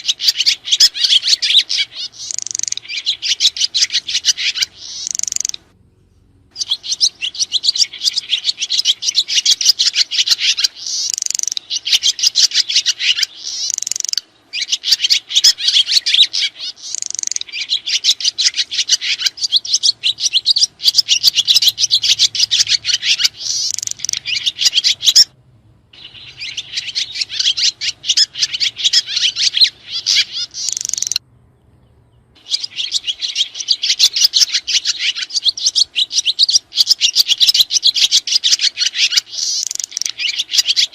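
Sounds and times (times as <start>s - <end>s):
swiftlets twittering: 0.4s - 5.6s, 18.9s - 25.3s, 26.0s - 31.2s.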